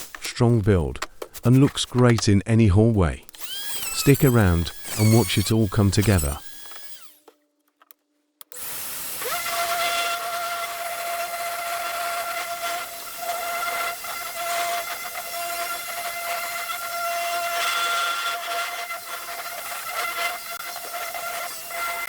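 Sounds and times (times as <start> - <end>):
power tool whining on wood: 3.3 - 7.3, 8.5 - 22.0.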